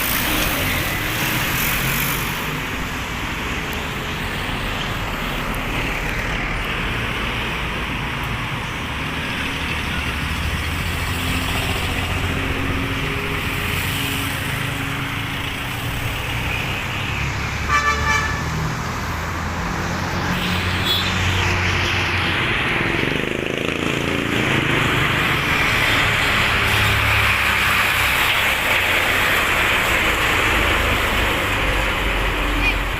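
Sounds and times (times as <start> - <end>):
vehicle engines passing: 0.0 - 32.9
car horn honking: 17.7 - 18.6.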